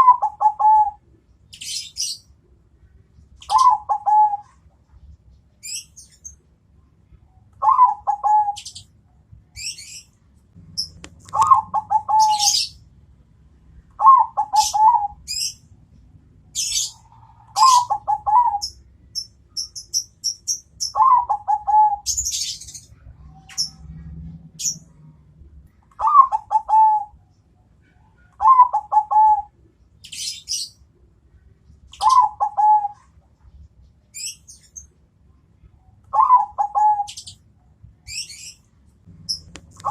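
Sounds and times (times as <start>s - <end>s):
dove cooing: 0.0s - 1.0s, 3.4s - 4.6s, 7.6s - 8.8s, 10.8s - 12.8s, 14.0s - 15.6s, 16.6s - 18.8s, 20.9s - 22.6s, 26.0s - 27.2s, 28.3s - 29.6s, 32.0s - 33.1s, 36.1s - 37.4s, 39.2s - 39.9s
small birds chirping: 0.0s - 12.9s, 13.7s - 39.9s.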